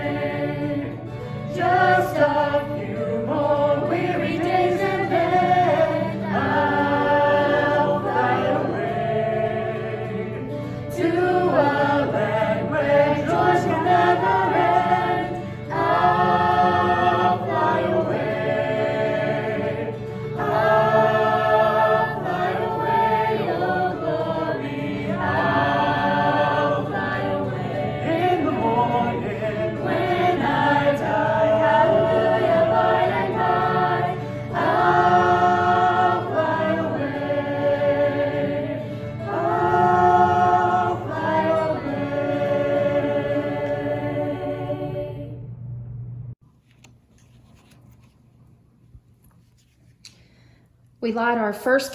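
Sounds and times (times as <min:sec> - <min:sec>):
choir singing: 0:00.0 - 0:45.5
singers breathing: 0:50.1 - 0:50.8.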